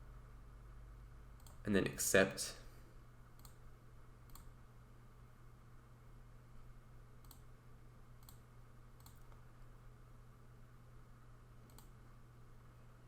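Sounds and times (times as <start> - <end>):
low steady hum: 0.0 - 13.0
computer mouse clicks: 1.4 - 1.6, 3.4 - 3.6, 4.2 - 4.6, 7.2 - 7.5, 8.2 - 8.4, 9.0 - 9.4, 11.6 - 12.0.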